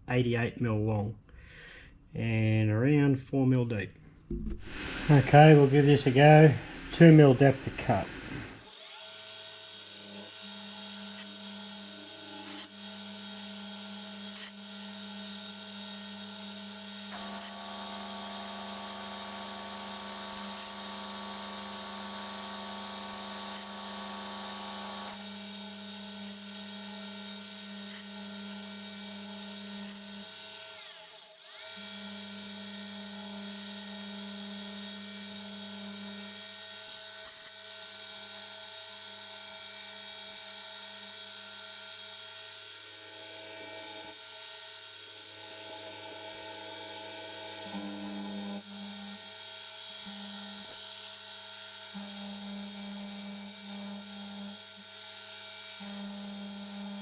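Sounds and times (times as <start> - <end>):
lower machine hum: 4.4 - 8.6.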